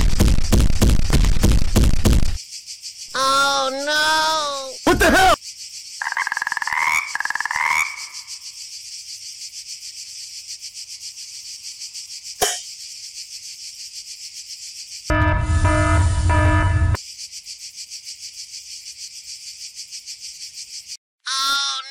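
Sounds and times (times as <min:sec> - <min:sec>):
crickets trilling: 0:02.4 - 0:15.1, 0:16.9 - 0:21.0
frog calling: 0:03.1 - 0:05.4, 0:06.0 - 0:08.6, 0:21.3 - 0:21.9.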